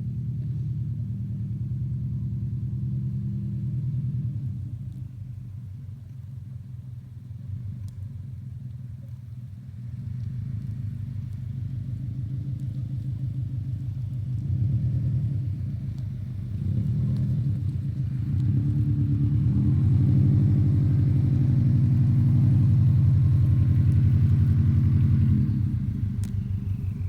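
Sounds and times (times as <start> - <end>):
car engine rumbling under load: 0.0 - 27.0.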